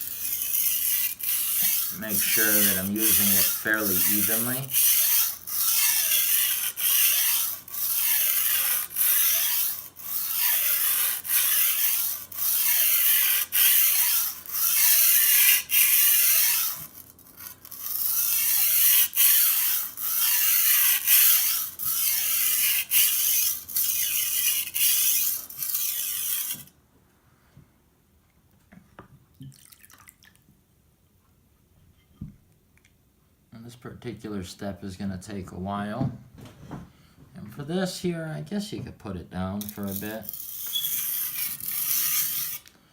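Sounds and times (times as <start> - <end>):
blade scraping on sharpening stone: 0.0 - 26.7, 39.6 - 42.7.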